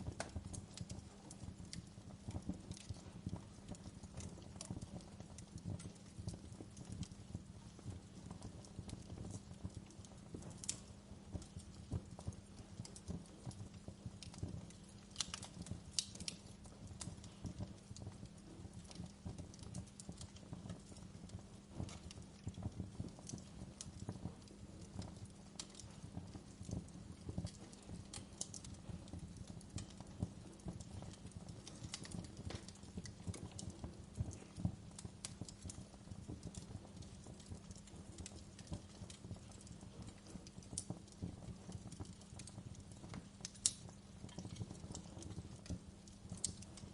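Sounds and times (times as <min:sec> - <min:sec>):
campfire crackling and popping: 0:00.0 - 0:46.9
low rumble of burning fire: 0:00.0 - 0:46.9.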